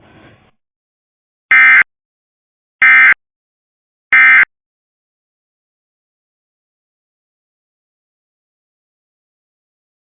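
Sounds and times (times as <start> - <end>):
digital data tone bursts: 1.5 - 1.8.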